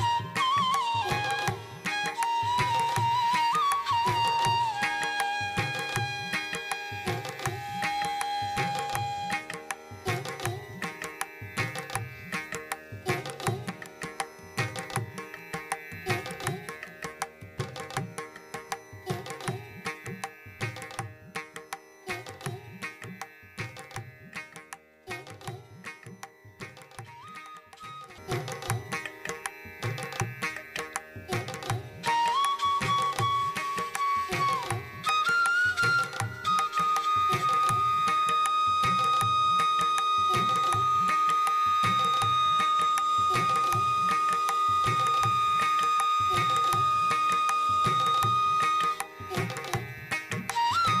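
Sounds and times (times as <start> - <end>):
held flute-like note: 0.0 - 10.2, 27.0 - 28.7, 31.3 - 49.8, 50.5 - 51.0
tabla strokes: 0.0 - 51.0.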